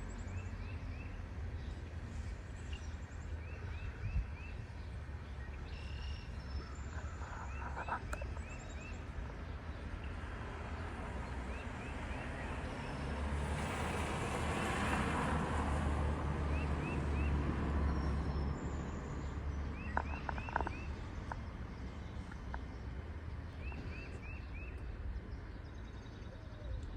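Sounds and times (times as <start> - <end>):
road traffic rumble: 0.0 - 26.9
vehicle passing: 10.1 - 24.3
bird chirping: 17.9 - 26.9.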